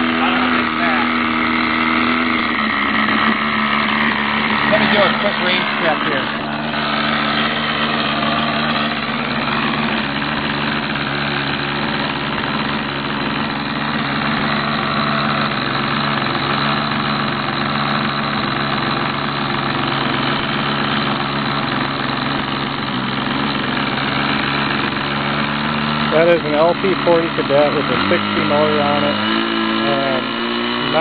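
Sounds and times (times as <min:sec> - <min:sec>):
model airplane engine idling: 0:00.0 - 0:31.0.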